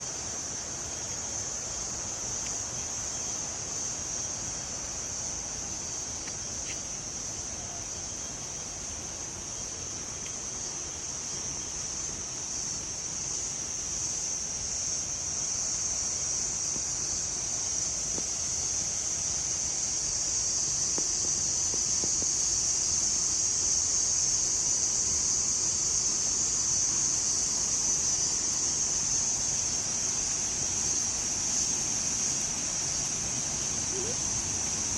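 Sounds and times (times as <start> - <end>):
cricket chirping: 0.0 - 34.9.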